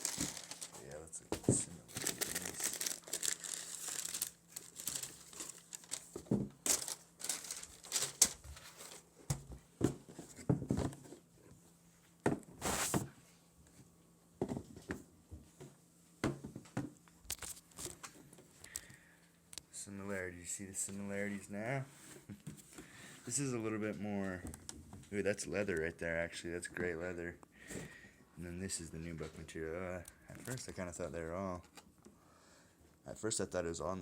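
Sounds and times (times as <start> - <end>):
paper packaging crinkling: 0.0 - 9.1, 17.3 - 18.0.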